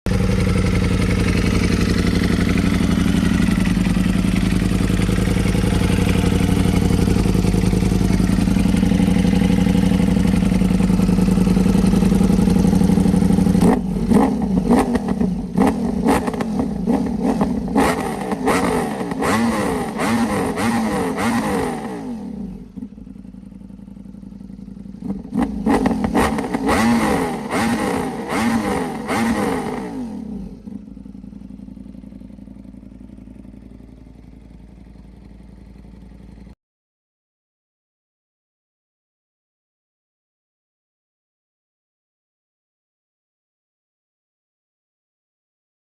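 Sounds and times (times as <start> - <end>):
motorcycle engine revving: 0.1 - 36.6.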